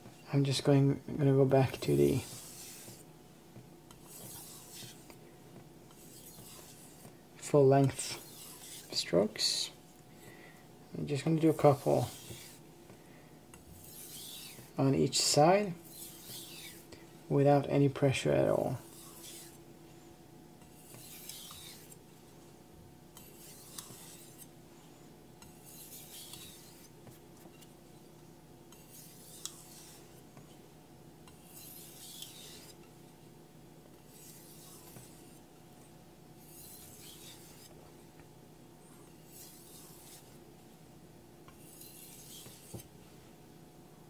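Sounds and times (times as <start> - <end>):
knife scraping on whetstone: 1.7 - 3.1, 3.9 - 5.2, 5.9 - 7.1, 7.8 - 9.7, 11.2 - 12.6, 13.5 - 14.8, 15.8 - 16.9, 18.5 - 19.6, 20.6 - 22.0, 23.1 - 24.5, 25.4 - 27.7, 28.7 - 30.5, 31.3 - 33.0, 34.0 - 35.5, 36.4 - 37.8, 39.0 - 40.4, 41.5 - 42.9.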